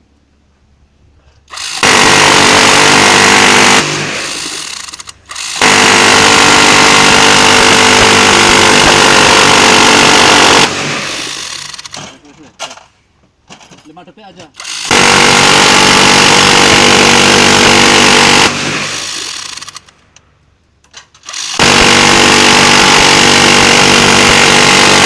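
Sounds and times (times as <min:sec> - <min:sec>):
rotary machine gun firing: 0:01.5 - 0:12.1, 0:14.6 - 0:20.0, 0:21.2 - 0:25.0.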